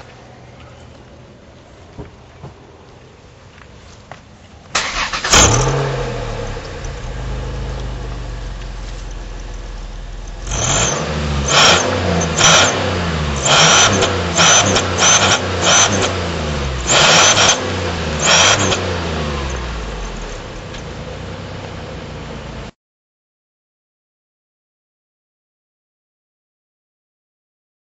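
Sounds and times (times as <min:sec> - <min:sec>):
car engine revving: 0:04.8 - 0:22.7
exhaust whistle: 0:05.3 - 0:16.1.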